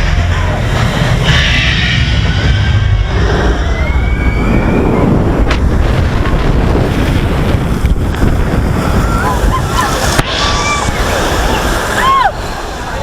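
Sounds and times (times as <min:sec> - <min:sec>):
wind rushing over microphone: 0:00.0 - 0:13.0
rushing water: 0:03.5 - 0:13.0.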